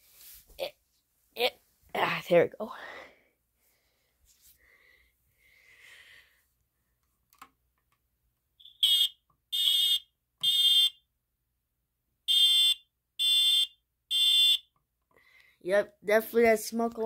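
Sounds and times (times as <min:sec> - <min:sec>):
smoke alarm beeps: 0:08.6 - 0:11.1, 0:12.3 - 0:14.7.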